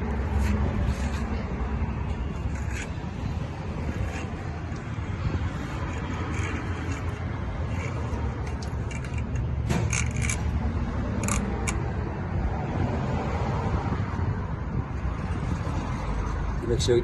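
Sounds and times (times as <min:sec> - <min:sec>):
metallic clicks and clinks of tools: 0:07.8 - 0:10.5, 0:11.2 - 0:11.8.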